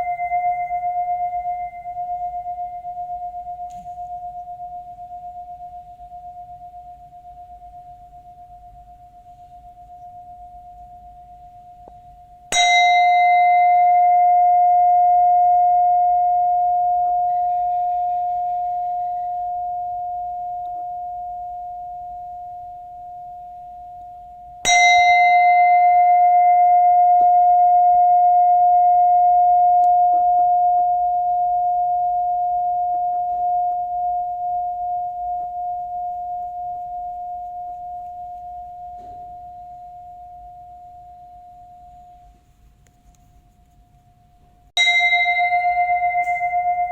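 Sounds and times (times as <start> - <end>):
bell ringing: 44.8 - 46.9.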